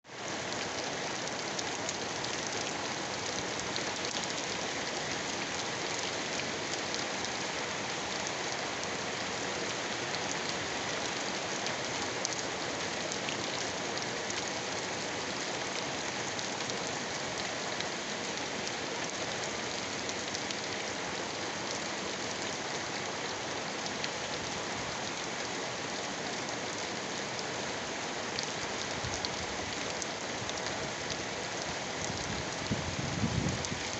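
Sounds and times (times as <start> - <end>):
heavy rain falling: 0.0 - 33.9.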